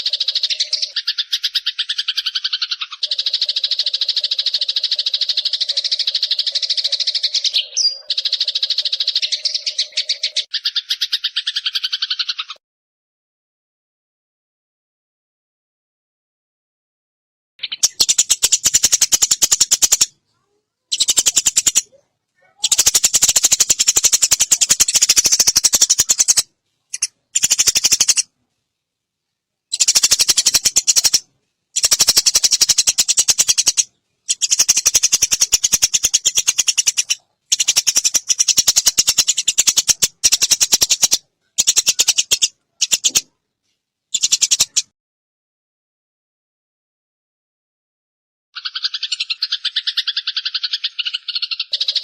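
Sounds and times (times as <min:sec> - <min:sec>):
sparrow rapid chattering call: 0:00.0 - 0:12.6, 0:17.6 - 0:28.3, 0:29.7 - 0:43.3, 0:44.1 - 0:44.9, 0:48.6 - 0:52.0.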